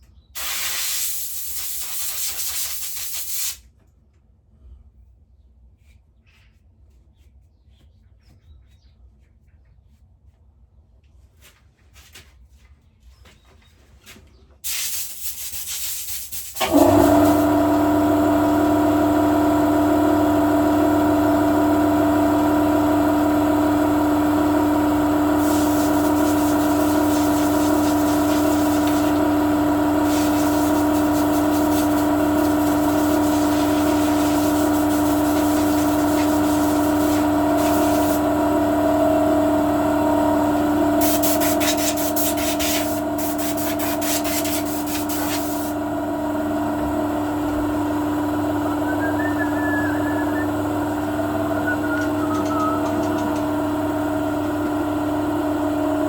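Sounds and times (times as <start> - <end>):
machine motor humming and whining: 16.6 - 56.0.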